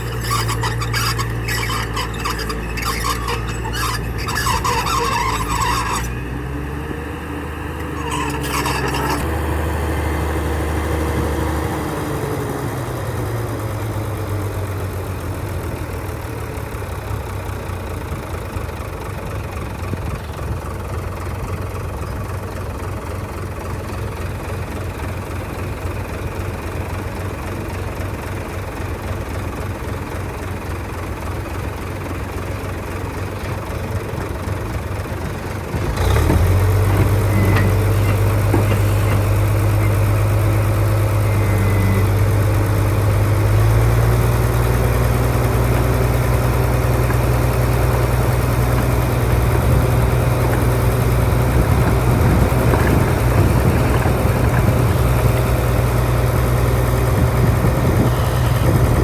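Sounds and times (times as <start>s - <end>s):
brief high squeal: 0.0s - 6.3s, 7.8s - 9.3s, 37.2s - 40.1s
heavy diesel engine running: 0.0s - 59.0s.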